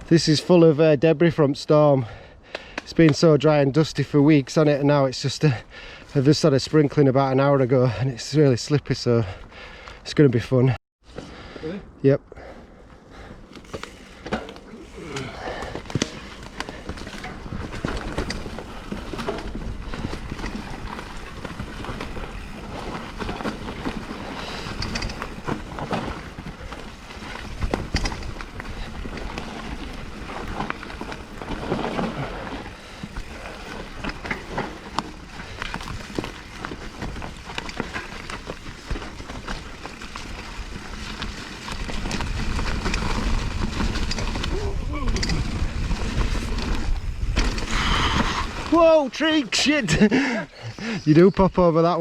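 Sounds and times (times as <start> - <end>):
bike tyre and trail noise: 0.0 - 52.0
bike rattling over bumps: 12.7 - 50.4.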